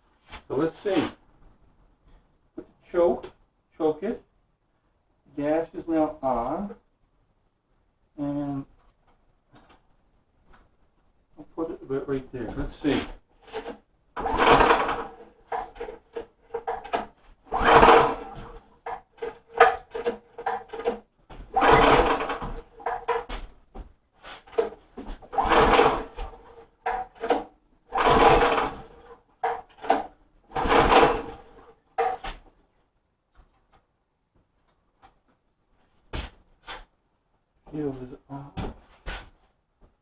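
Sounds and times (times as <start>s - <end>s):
engine pull-starter pulls: 12.5s - 23.4s, 24.3s - 32.4s
rattles and clicks: 13.4s - 23.4s, 24.4s - 32.4s.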